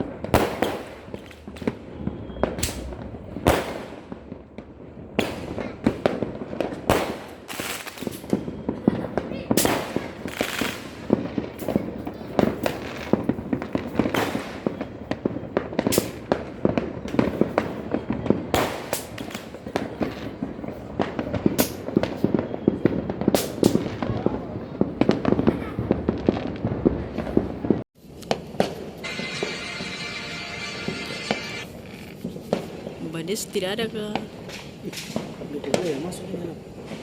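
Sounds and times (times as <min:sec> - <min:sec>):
fireworks bangs and crackles: 0:00.0 - 0:37.0.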